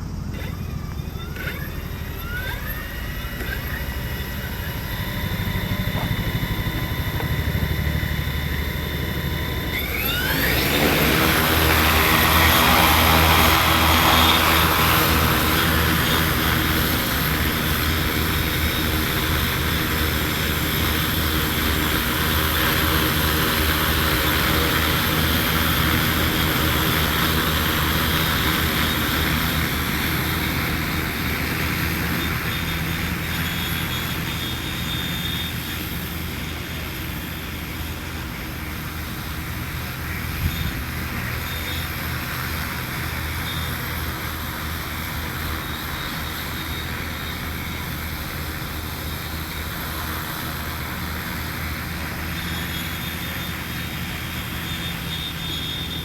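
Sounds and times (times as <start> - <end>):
drone propellers whirring: 0.0 - 56.0.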